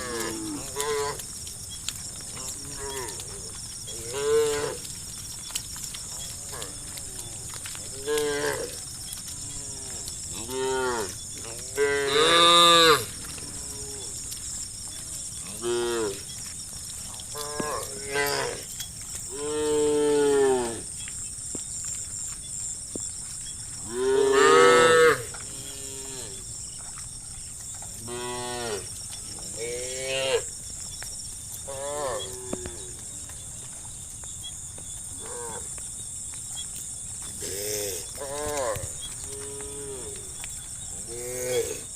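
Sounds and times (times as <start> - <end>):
cows mooing: 0.0 - 1.3, 2.2 - 4.9, 6.1 - 14.4, 15.3 - 16.3, 17.2 - 20.9, 23.8 - 26.7, 28.0 - 30.5, 31.6 - 33.0, 37.3 - 41.9.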